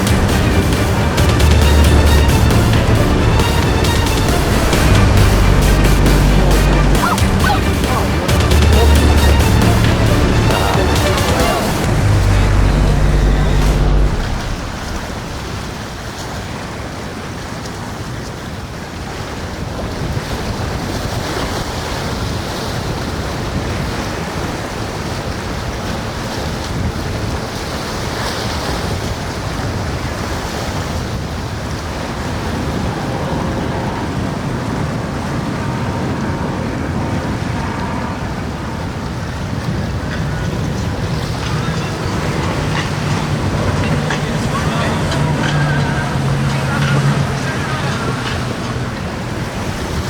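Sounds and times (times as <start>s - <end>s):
boat engine running: 0.0s - 16.8s, 31.8s - 50.0s
surf rushing: 0.0s - 50.0s
wind noise on microphone: 0.0s - 50.0s.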